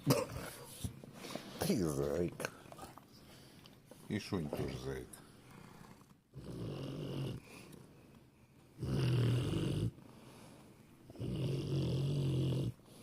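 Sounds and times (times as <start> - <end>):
pet snoring: 5.6 - 7.8, 8.8 - 10.0, 11.1 - 13.0.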